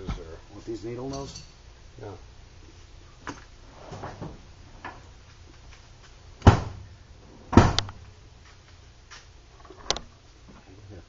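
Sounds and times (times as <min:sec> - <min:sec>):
sharp knocks: 0:06.4 - 0:06.9, 0:07.5 - 0:08.0.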